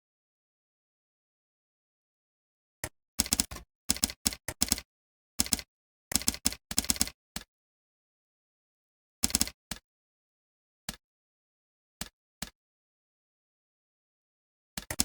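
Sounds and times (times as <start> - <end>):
typing on computer keyboard: 3.2 - 4.8, 5.4 - 7.2, 9.2 - 9.6, 14.8 - 15.0.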